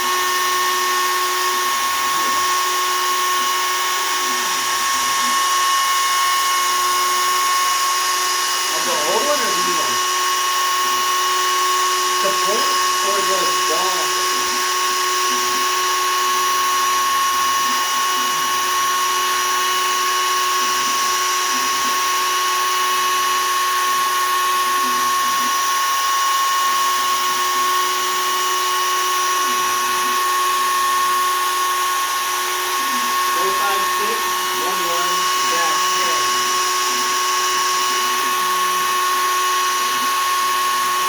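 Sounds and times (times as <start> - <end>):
router bit high whine: 0.0 - 41.0
hiss of wood cutting: 3.5 - 16.8, 29.1 - 41.0.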